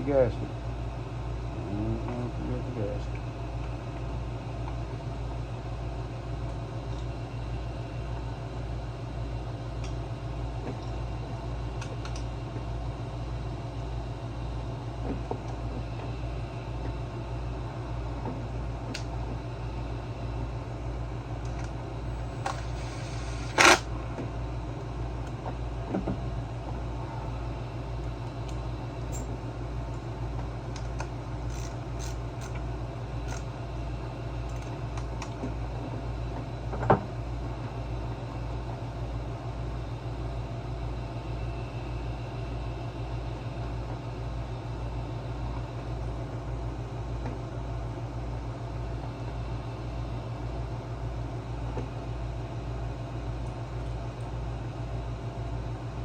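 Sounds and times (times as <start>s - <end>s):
low pulsing hum: 0.0s - 38.6s
clicks of tools handled: 30.8s - 32.6s.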